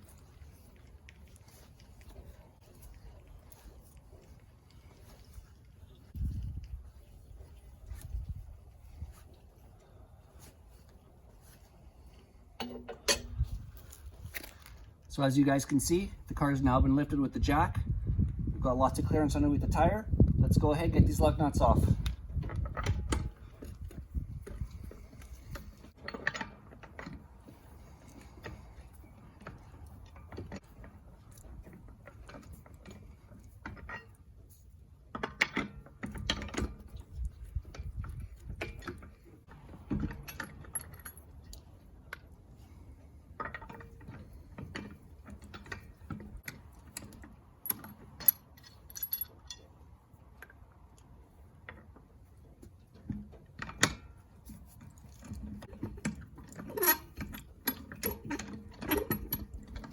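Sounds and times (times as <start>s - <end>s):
lug nuts and wrench clinking: 43.4s - 50.6s.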